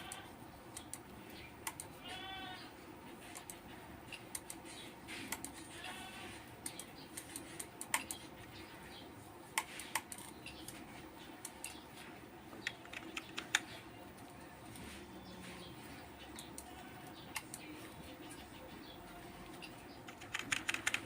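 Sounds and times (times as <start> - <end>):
keyboard and mouse clicks: 0.0 - 2.0, 3.2 - 5.6, 6.6 - 8.3, 9.5 - 11.9, 12.5 - 14.3, 16.3 - 17.7, 19.6 - 21.0
bleat-like call: 2.0 - 2.8, 5.6 - 6.4.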